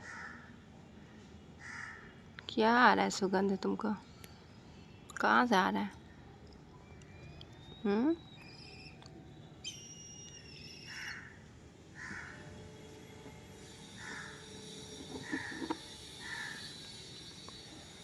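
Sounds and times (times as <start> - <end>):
crow cawing: 0.0 - 0.5, 1.6 - 2.1, 10.8 - 11.4, 12.0 - 12.5, 14.0 - 14.5, 15.2 - 16.8.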